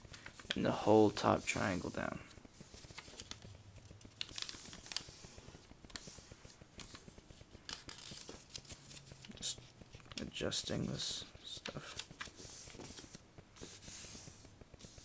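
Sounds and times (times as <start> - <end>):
paper being folded and creased: 0.0 - 15.0
paper rubbing on paper: 0.6 - 3.4, 11.0 - 15.0.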